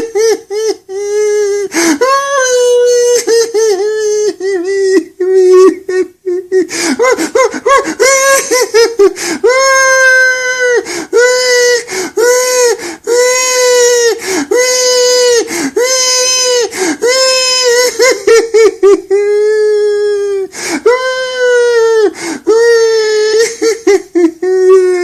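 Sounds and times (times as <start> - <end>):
gasping sobs: 0.0 - 25.0
man wailing: 0.0 - 25.0.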